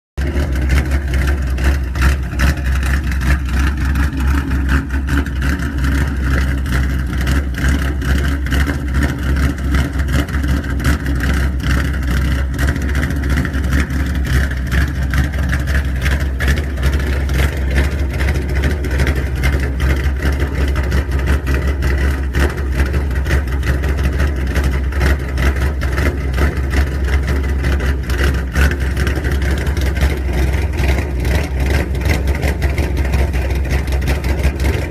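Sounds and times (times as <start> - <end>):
car engine rumbling: 0.2 - 34.9.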